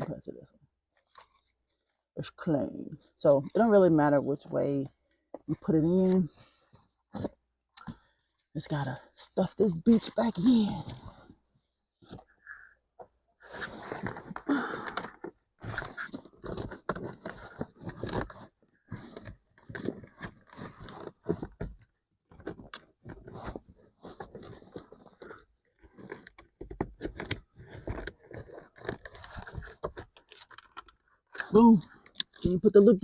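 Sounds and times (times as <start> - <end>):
filter scraping and crunching: 13.4 - 21.7, 22.3 - 33.0.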